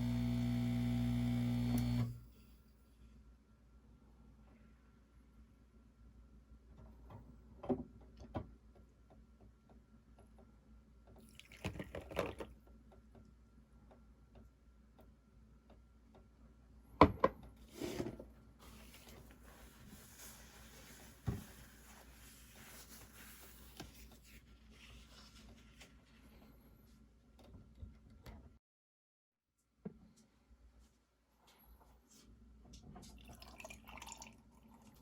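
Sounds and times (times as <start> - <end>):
liquid pouring: 11.3 - 12.5, 33.1 - 35.0.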